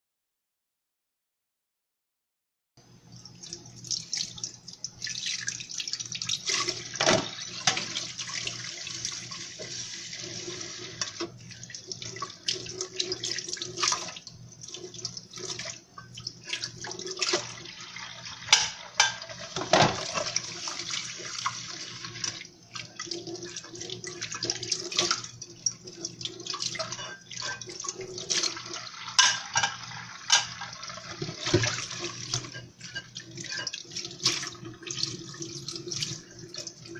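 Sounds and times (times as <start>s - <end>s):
dishes clinking: 7.0s - 7.9s, 18.4s - 20.4s, 26.7s - 27.8s, 29.1s - 33.9s
tap running: 29.1s - 32.5s.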